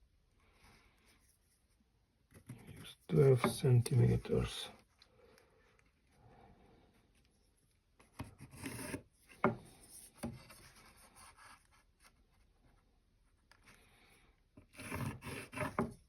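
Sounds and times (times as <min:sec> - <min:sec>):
pencil scratching on wood: 0:08.0 - 0:12.2, 0:14.6 - 0:16.0.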